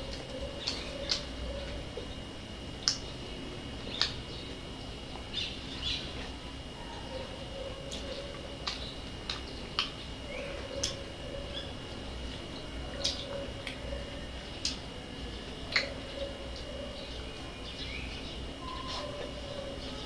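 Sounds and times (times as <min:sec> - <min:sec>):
mouth clicks and chewing smacks: 0:00.0 - 0:01.8, 0:07.9 - 0:10.0, 0:10.7 - 0:11.1, 0:12.3 - 0:13.9, 0:14.6 - 0:14.9, 0:15.7 - 0:16.7
faint steady high tone: 0:15.3 - 0:20.0.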